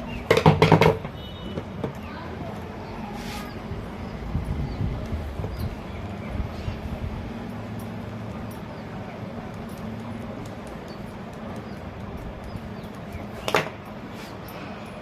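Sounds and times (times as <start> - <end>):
small metal clinks and ticks: 7.3 - 15.0.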